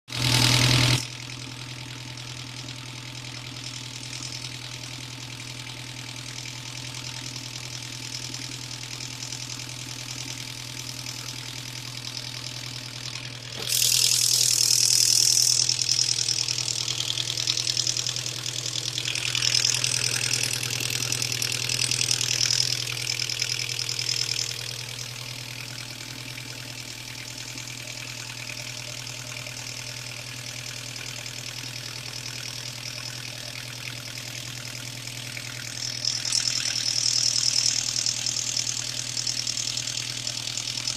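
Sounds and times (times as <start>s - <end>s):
car engine idling with knock: 0.1s - 40.9s
hiss: 13.6s - 16.4s.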